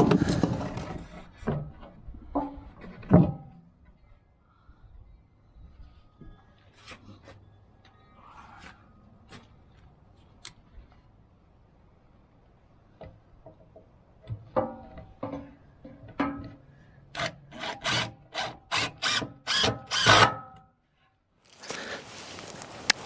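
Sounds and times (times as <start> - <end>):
clunks and knocks: 0.0 - 1.8.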